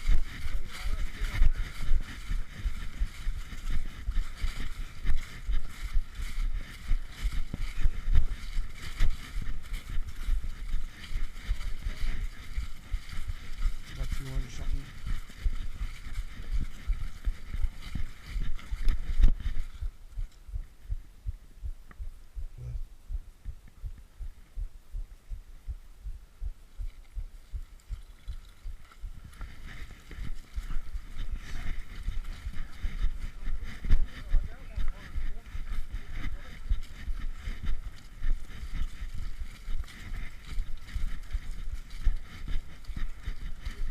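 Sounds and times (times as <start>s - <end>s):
microphone jostling thumps: 0.0s - 28.0s
brush rustling: 0.0s - 43.9s.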